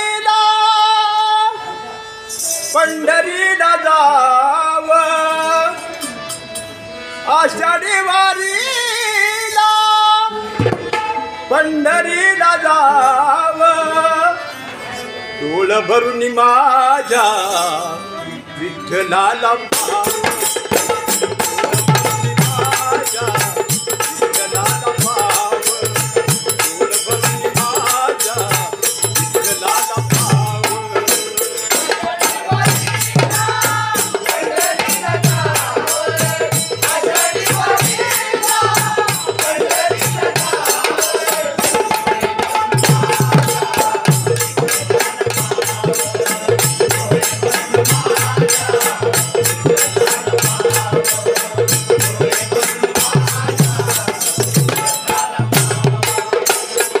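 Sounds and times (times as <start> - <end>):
devotional music: 0.0 - 57.0
jingling percussion: 2.0 - 3.9, 5.0 - 11.8, 16.9 - 57.0.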